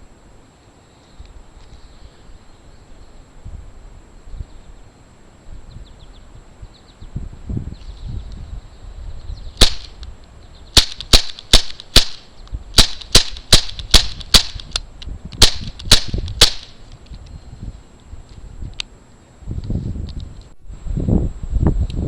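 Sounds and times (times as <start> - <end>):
bb pistol shots: 9.6 - 10.0, 10.8 - 14.8, 15.4 - 16.8.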